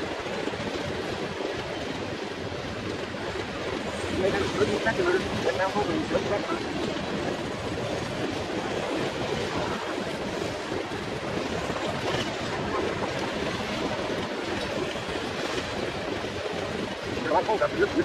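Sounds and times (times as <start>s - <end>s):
steady rushing noise: 0.0s - 18.0s
wind buffeting microphone: 0.0s - 18.0s.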